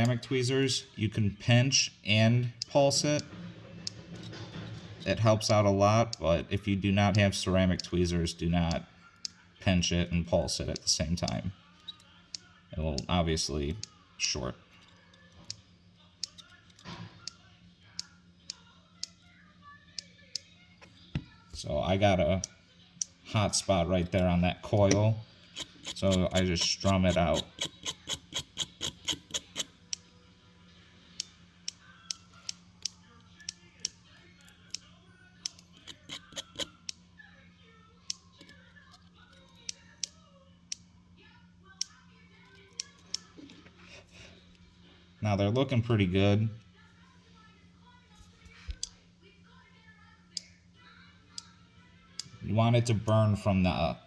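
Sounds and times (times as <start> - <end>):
sharp tool clicks: 24.8 - 30.0, 35.4 - 37.0.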